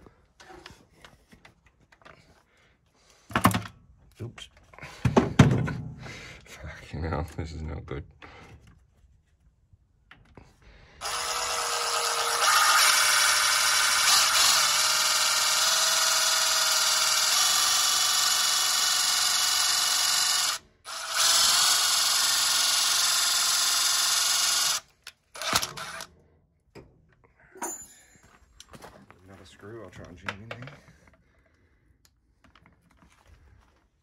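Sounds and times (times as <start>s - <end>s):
power drill driving a screw: 11.0s - 26.1s.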